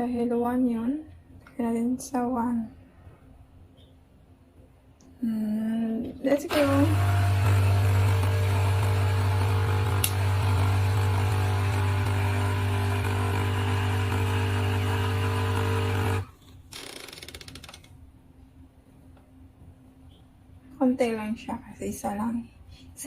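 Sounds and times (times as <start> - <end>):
coffee machine pump humming: 6.4 - 16.4.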